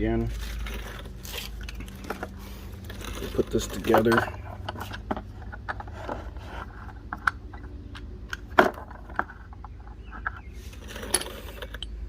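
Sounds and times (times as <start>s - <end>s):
metal tool parts clicking: 0.6s - 5.9s, 10.2s - 12.0s.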